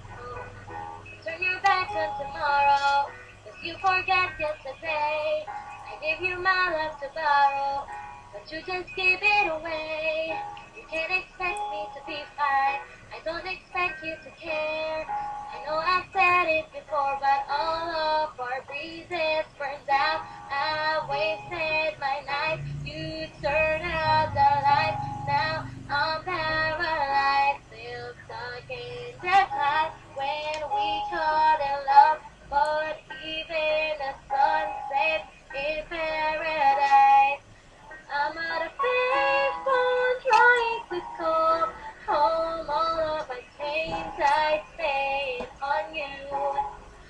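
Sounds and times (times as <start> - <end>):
person singing pop melody: 0.0 - 46.9
faint low backing music: 0.0 - 47.0.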